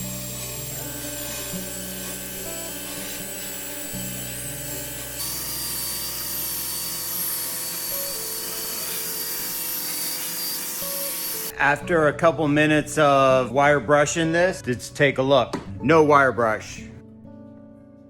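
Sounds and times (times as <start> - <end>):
wire brush scrubbing wood: 0.0 - 11.5
background music: 0.0 - 18.0.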